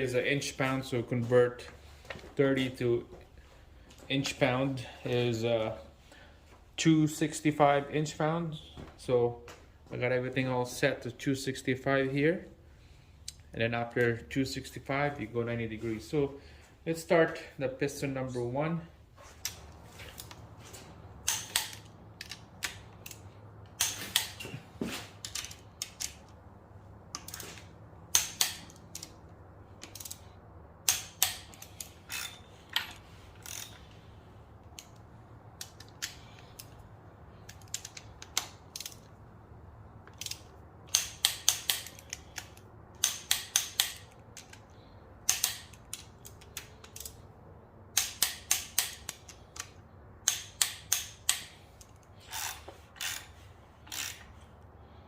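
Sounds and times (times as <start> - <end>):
torque wrench clicking: 21.2 - 24.4, 29.8 - 30.2, 30.8 - 33.9, 37.4 - 39.1, 40.1 - 47.2, 47.9 - 54.4.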